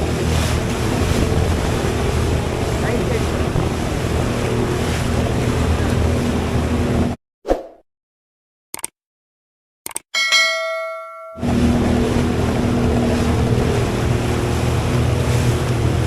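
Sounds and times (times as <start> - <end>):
jet ski engine running: 0.0 - 7.2, 11.4 - 16.0
wind and water noise: 0.0 - 7.2, 10.4 - 16.0
bell-like chime: 10.2 - 11.5.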